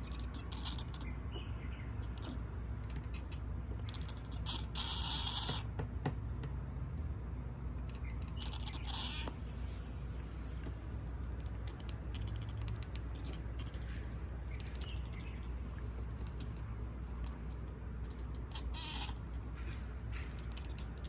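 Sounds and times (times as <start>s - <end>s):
cat chirping meows: 0.0s - 5.7s, 7.8s - 9.4s, 11.3s - 19.5s, 20.2s - 21.0s
steady low hum: 0.0s - 21.0s.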